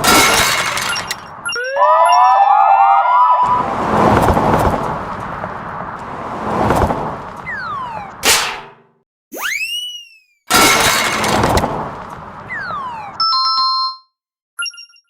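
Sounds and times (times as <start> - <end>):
scattered cartoon hits: 0.0 - 1.3, 8.2 - 9.0, 10.5 - 12.0
siren-like warble: 1.0 - 4.2
rising whistle-like glides: 1.4 - 4.3
falling slide-whistle glides: 1.5 - 4.0, 9.4 - 10.4
loud sudden crash: 3.4 - 9.0, 10.5 - 12.0.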